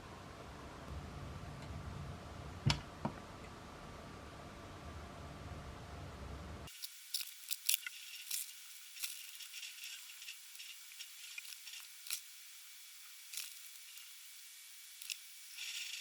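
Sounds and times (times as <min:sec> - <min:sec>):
sharp crackles: 0:06.7 - 0:16.0
soldering iron sizzling: 0:06.7 - 0:16.0.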